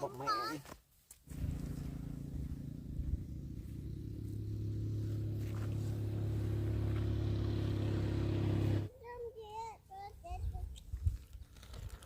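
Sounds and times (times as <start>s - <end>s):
engine running steadily: 1.3s - 8.9s.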